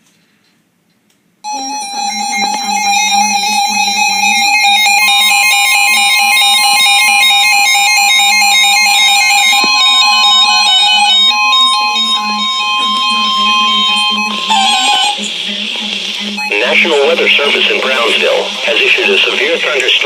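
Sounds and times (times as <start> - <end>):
high steady tone: 1.4 - 20.0
synthesizer music: 1.5 - 20.0
second steady tone: 8.3 - 20.0.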